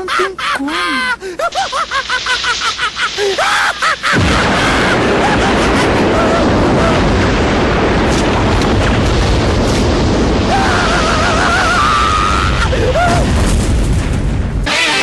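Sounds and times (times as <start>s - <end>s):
heavy explosion rumble: 2.0s - 14.7s
guitar music: 14.7s - 15.0s.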